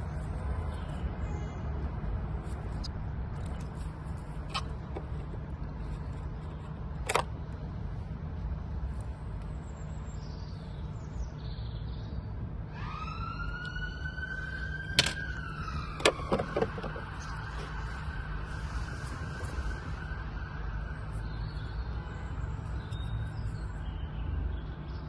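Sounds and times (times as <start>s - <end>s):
siren-like wail: 12.7s - 21.8s.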